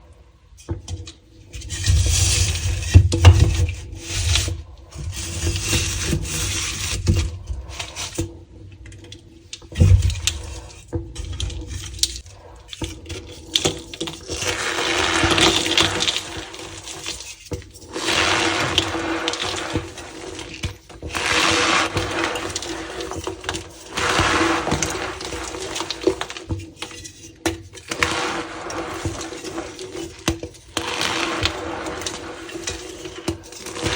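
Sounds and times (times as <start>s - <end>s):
chalk crushed by hand: 17.9s - 26.5s, 27.9s - 33.9s.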